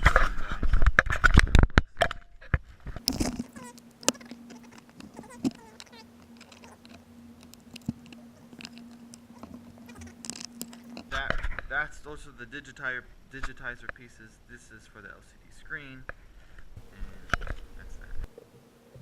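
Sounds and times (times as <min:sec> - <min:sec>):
steady low hum: 0:02.2 - 0:19.0.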